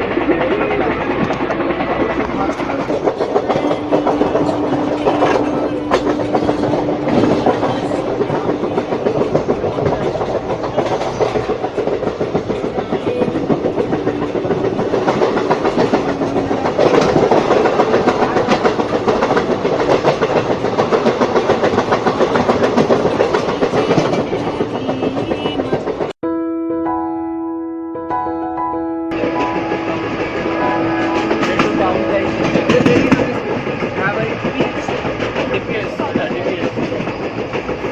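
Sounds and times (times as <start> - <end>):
train wheels clattering over rails: 0.0 - 26.2, 29.2 - 37.9.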